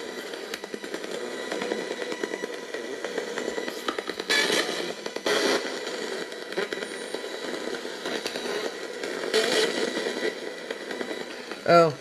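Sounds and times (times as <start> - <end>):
bursts of radio noise: 0.0 - 12.0
crackling radio static: 0.0 - 12.0.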